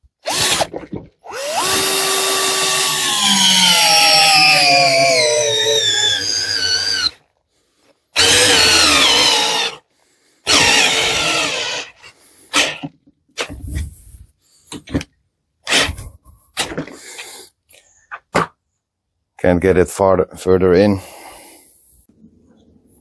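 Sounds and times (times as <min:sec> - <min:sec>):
cordless drill motor whining: 0:00.3 - 0:00.7, 0:01.3 - 0:07.2, 0:08.2 - 0:09.8, 0:10.5 - 0:12.9
drill trigger blips: 0:08.2 - 0:09.8, 0:10.5 - 0:12.9.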